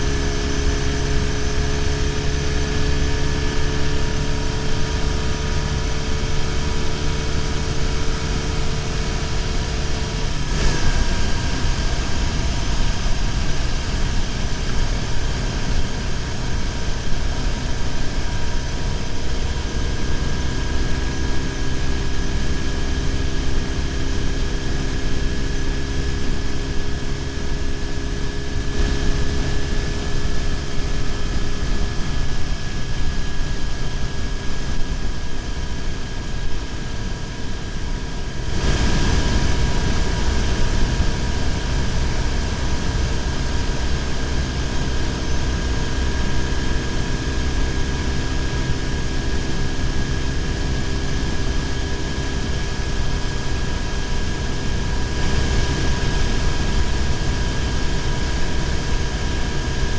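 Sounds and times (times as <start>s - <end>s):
motorcycle engine cruising: 0.0s - 16.6s
wind and road noise: 0.0s - 59.9s.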